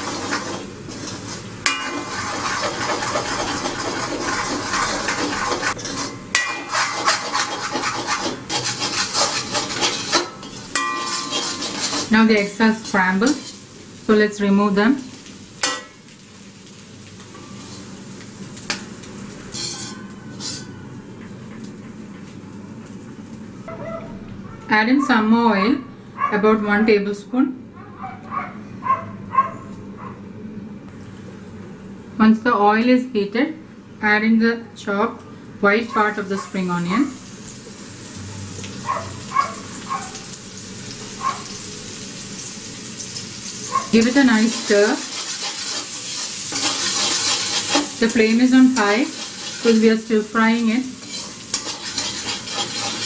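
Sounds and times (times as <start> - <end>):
spatula scraping a pan: 0.0 - 13.7, 19.4 - 20.8, 35.8 - 36.7, 43.6 - 53.0
low sizzle: 0.0 - 28.4, 29.2 - 53.0.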